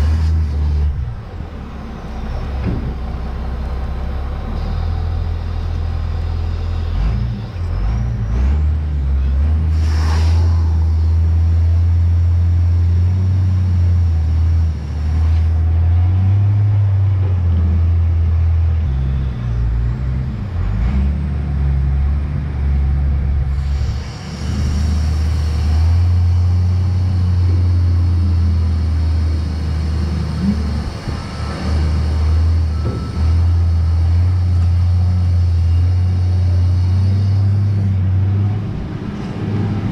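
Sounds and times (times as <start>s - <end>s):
heavy engine running: 0.0s - 39.9s
short hisses of air: 9.7s - 10.9s.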